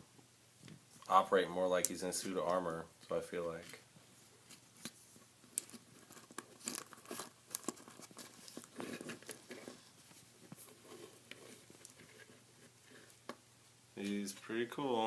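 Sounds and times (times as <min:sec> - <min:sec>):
scratchy plastic rubbing: 0:04.4 - 0:13.3.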